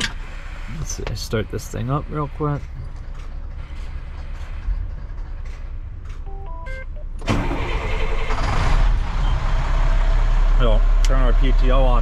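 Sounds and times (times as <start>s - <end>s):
diesel engine starting and idling: 0.0s - 12.0s
electronic beeps rising in pitch: 6.3s - 7.0s.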